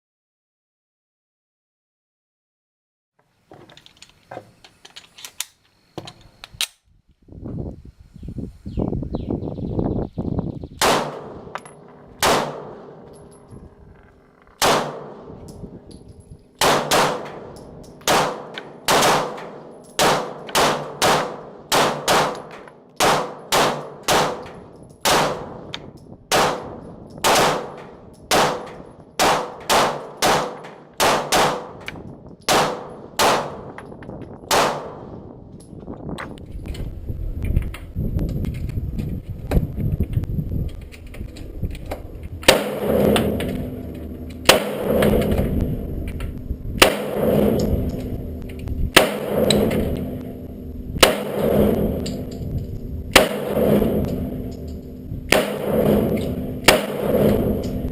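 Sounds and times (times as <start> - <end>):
pistol shots with short echo: 10.8 - 13.1, 14.6 - 15.4, 16.6 - 25.7, 26.3 - 33.8, 34.5 - 35.2, 55.3 - 57.8.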